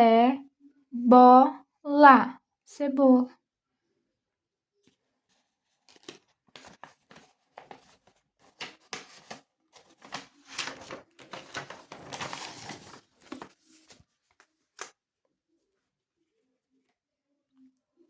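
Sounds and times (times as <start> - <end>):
paper rustling and crinkling: 4.8 - 14.6.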